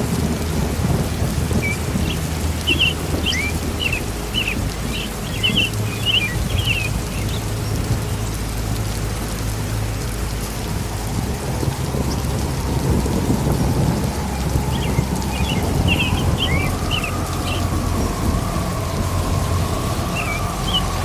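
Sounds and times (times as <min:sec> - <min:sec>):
rolling thunder: 0:00.0 - 0:08.2, 0:10.7 - 0:21.0
steady rain: 0:00.0 - 0:21.0.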